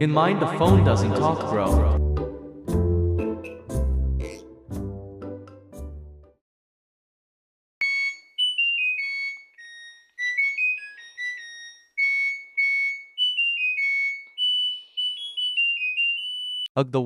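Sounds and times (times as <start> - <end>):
electronic beeper playing a tune: 7.8 - 16.7.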